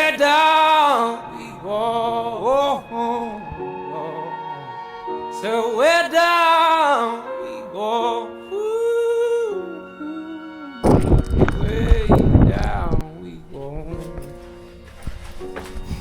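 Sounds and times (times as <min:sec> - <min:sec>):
person singing long notes: 0:00.0 - 0:14.7.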